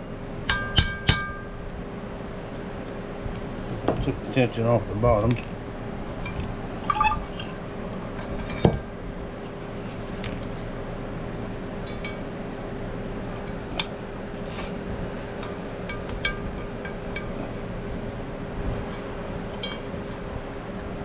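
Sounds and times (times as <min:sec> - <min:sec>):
steady hum: 0:00.0 - 0:21.0
metal tools clinking: 0:11.8 - 0:12.3, 0:19.5 - 0:19.9.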